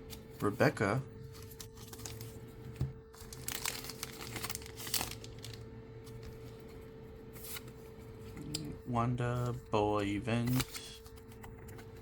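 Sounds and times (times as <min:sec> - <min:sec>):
foil wrapper crinkling: 0:01.4 - 0:02.4, 0:03.1 - 0:05.7.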